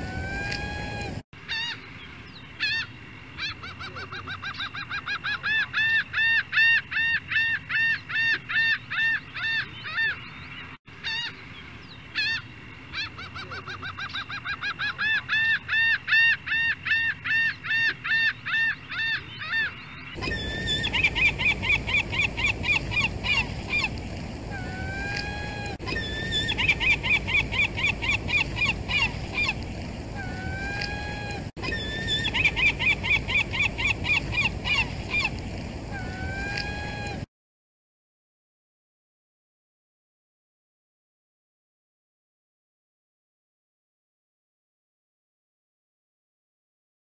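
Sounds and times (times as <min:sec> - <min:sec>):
fast high-pitched gull calls: 0:00.0 - 0:01.8, 0:11.0 - 0:11.4, 0:12.2 - 0:29.6, 0:30.2 - 0:37.3
gull calling: 0:00.0 - 0:01.9, 0:02.6 - 0:10.4, 0:11.0 - 0:11.4, 0:12.1 - 0:37.3.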